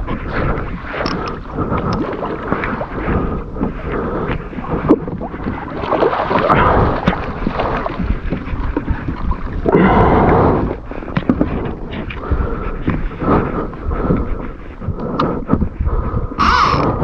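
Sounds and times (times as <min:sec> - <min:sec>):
water sloshing against kayak: 0:00.0 - 0:17.0
rush of water: 0:04.3 - 0:12.3, 0:16.4 - 0:17.0.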